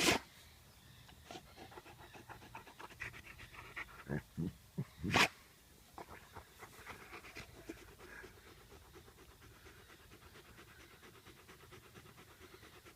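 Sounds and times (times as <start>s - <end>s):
dog panting: 1.3s - 4.3s, 6.0s - 12.9s.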